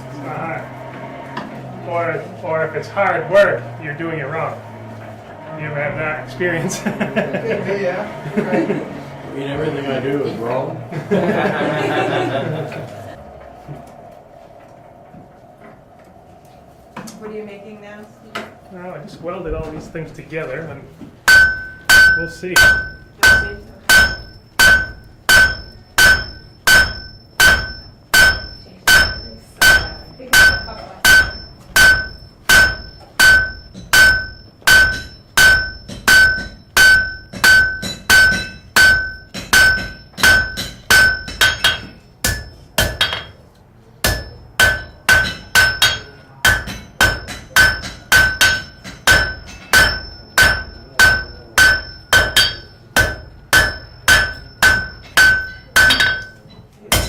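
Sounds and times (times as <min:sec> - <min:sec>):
hammer striking metal on anvil: 0:21.2 - 0:43.4, 0:44.0 - 0:57.0.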